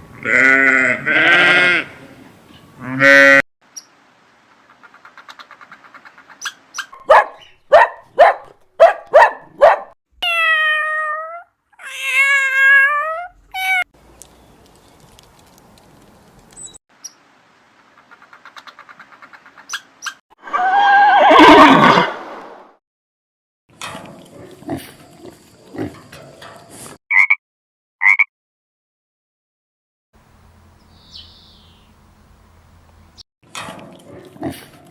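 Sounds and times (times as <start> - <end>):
cat meowing: 10.2 - 13.8
loud harsh animal call: 20.4 - 22.1.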